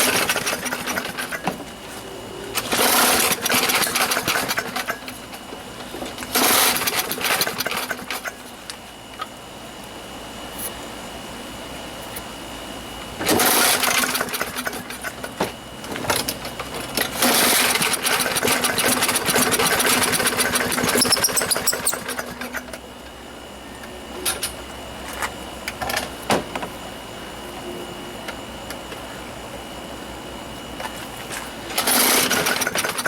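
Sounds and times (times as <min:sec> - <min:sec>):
lawnmower engine starting: 0:00.0 - 0:01.7, 0:02.5 - 0:08.4, 0:13.2 - 0:22.8, 0:31.3 - 0:33.0.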